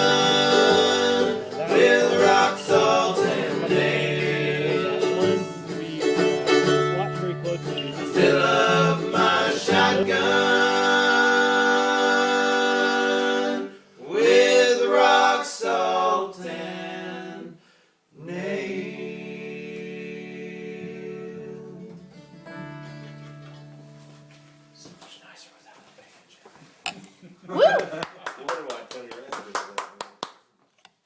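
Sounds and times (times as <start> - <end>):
voices singing in harmony: 0.0 - 17.6, 18.2 - 22.0.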